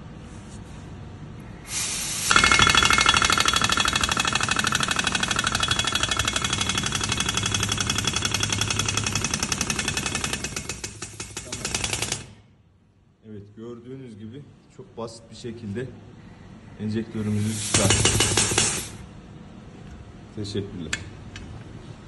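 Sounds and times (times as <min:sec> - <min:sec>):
air hiss: 0:01.6 - 0:02.4, 0:17.3 - 0:19.0
pneumatic air hammer hammering: 0:01.7 - 0:12.4, 0:17.5 - 0:19.0.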